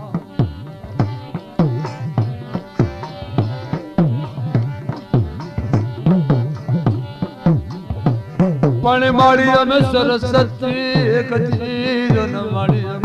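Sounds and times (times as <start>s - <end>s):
held instrument tones: 0.0s - 12.6s
drum with pitch-bending strokes: 0.0s - 13.0s.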